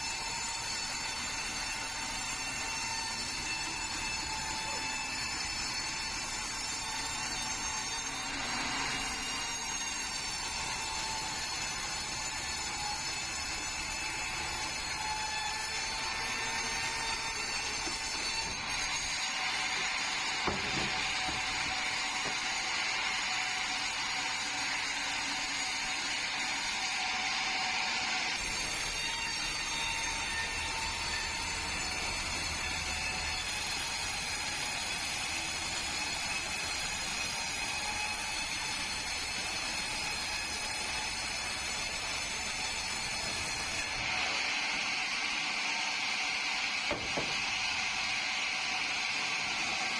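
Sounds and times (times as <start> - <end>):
sawmill blade cutting log: 0.0 - 49.9
sharp knock: 46.9 - 47.4.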